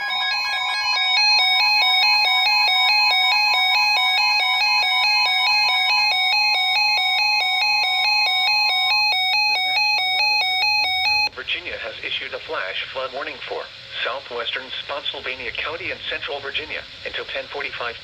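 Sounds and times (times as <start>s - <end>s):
electronic alert tone beeping: 0.0s - 8.7s.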